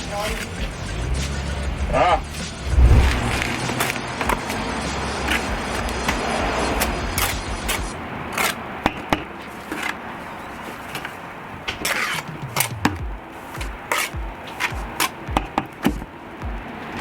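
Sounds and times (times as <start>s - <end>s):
steady rumbling noise: 2.5s - 3.9s.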